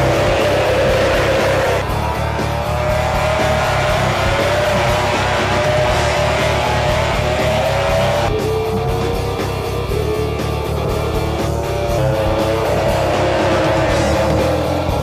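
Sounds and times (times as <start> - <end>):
electric guitar lead: 0.0 - 15.0
steady drum beat: 0.0 - 15.0.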